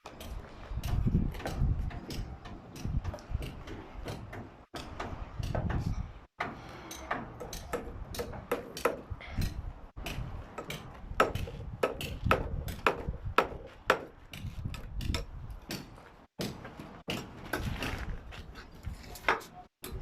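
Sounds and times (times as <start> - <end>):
hammers striking nails into wood: 6.4 - 14.1.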